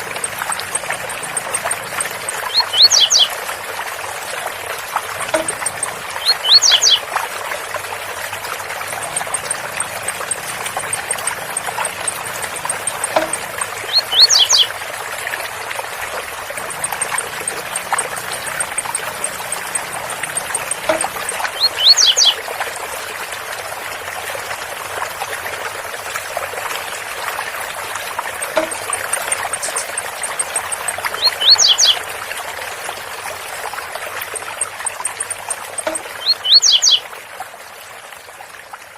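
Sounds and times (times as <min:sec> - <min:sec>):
faint rapid high ticking: 0:00.0 - 0:37.1
bird singing short song phrase: 0:02.4 - 0:03.3, 0:06.2 - 0:07.0, 0:13.1 - 0:14.7, 0:20.2 - 0:22.4, 0:31.2 - 0:32.0, 0:35.9 - 0:37.0.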